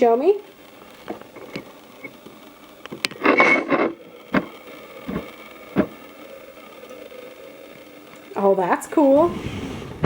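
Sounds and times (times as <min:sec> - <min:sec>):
scraping rustle: 0:08.8 - 0:10.0.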